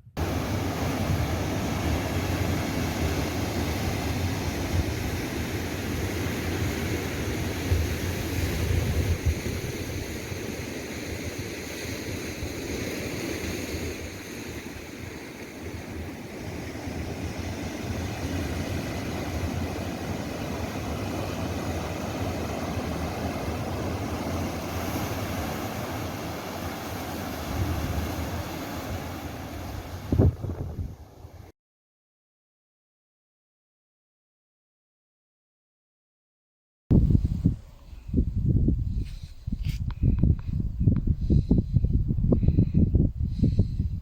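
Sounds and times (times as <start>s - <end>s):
wind buffeting microphone: 0.1s - 10.7s, 16.5s - 31.5s, 36.9s - 44.0s.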